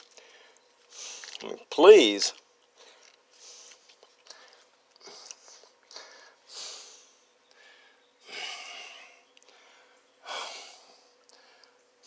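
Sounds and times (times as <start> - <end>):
person breathing heavily: 2.8 - 11.8.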